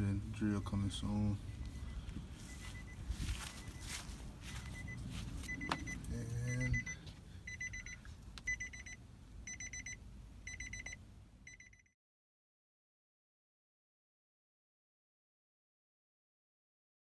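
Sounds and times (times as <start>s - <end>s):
high-pitched warning beeps: 0.5s - 11.9s.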